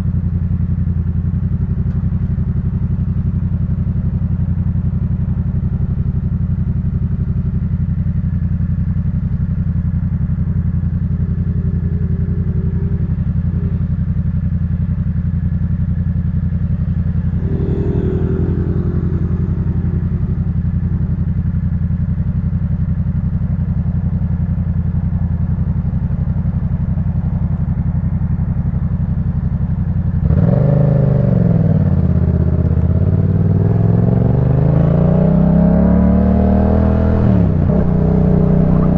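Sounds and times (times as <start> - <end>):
motorcycle engine idling: 0.0 - 30.2
motorcycle accelerating away: 9.2 - 15.8, 16.4 - 22.8, 29.9 - 38.9.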